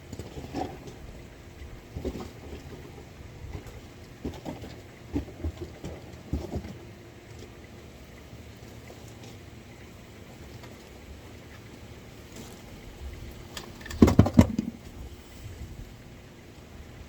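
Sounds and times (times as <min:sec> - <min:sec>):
wind rumble on microphone: 0:14.6 - 0:16.1.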